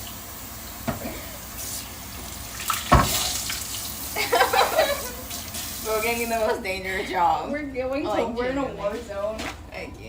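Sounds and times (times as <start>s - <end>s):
tap water running into sink: 0.0s - 6.4s.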